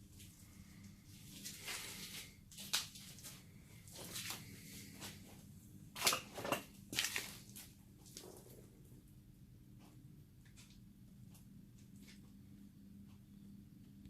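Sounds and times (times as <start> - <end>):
faint steady hum: 0.0 - 14.0
rustling and scuffing: 0.2 - 8.5.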